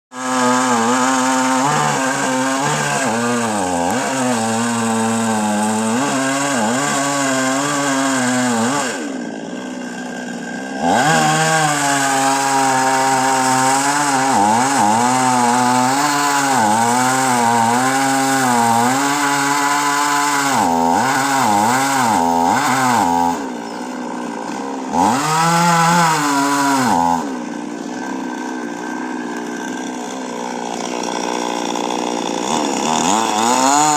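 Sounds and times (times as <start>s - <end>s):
chainsaw cutting wood: 0.1s - 33.9s.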